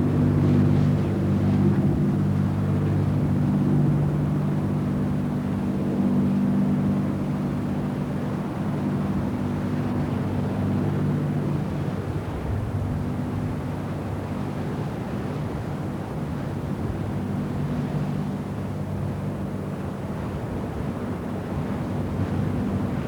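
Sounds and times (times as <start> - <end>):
boat engine droning: 0.0 - 23.0.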